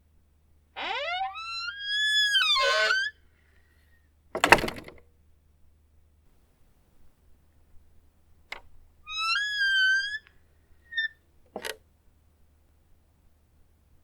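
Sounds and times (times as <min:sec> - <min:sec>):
door hinge squealing: 0:00.8 - 0:03.2, 0:09.1 - 0:10.3, 0:10.9 - 0:11.1
short squeak: 0:00.8 - 0:03.2, 0:09.1 - 0:10.3, 0:10.9 - 0:11.2.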